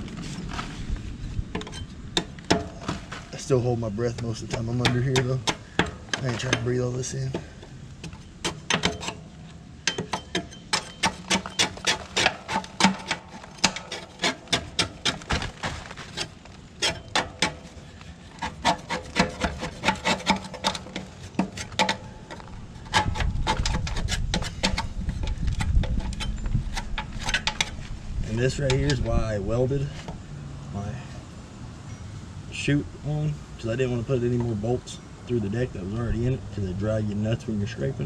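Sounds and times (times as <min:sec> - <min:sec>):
scraper scraping mower deck: 0:00.0 - 0:02.0, 0:10.1 - 0:29.2.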